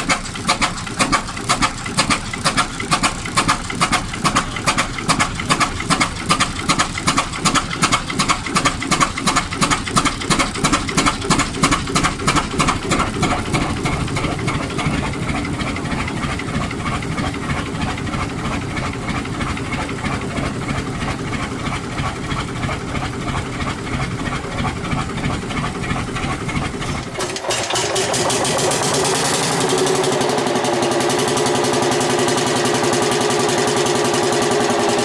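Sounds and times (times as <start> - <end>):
big engine rhythmic beat: 0.0 - 27.2
engine mechanical clatter: 0.0 - 35.0.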